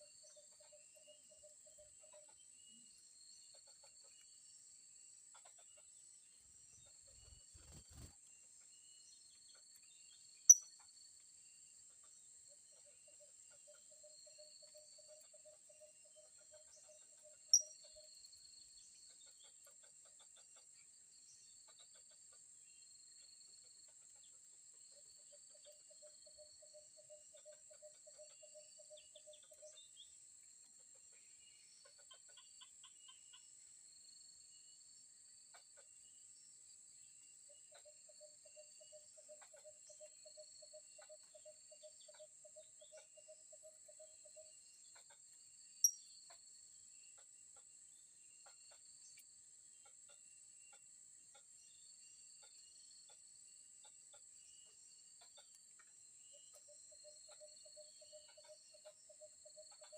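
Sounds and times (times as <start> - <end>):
faint chirps: 0.0 - 19.4, 30.9 - 59.9
rapid repeated insect pulses: 7.1 - 8.2.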